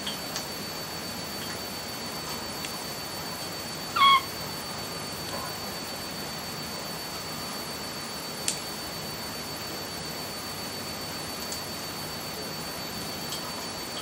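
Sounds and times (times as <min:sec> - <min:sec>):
faint high-pitched whine: 0:00.0 - 0:14.0
budgie chirp: 0:03.9 - 0:04.4.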